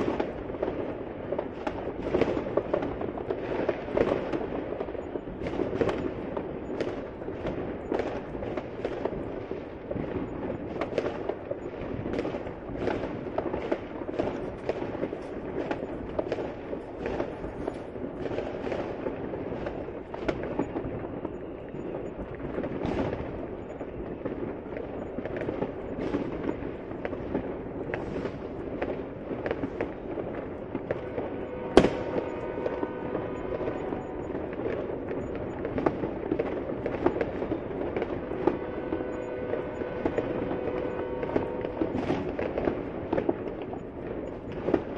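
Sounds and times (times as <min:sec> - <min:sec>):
fireworks bangs and crackles: 0:00.0 - 0:44.9
rumble of distant explosions: 0:00.0 - 0:44.9
loud sharp bang: 0:31.1 - 0:34.2.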